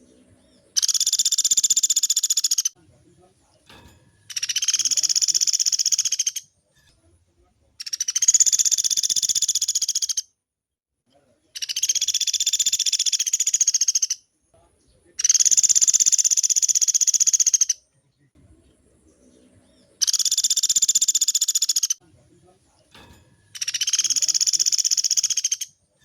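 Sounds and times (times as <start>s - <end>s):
woodpecker rattling trills: 0.5s - 2.8s, 4.2s - 6.5s, 7.8s - 10.3s, 11.6s - 14.2s, 15.2s - 17.8s, 19.7s - 22.0s, 23.4s - 25.8s.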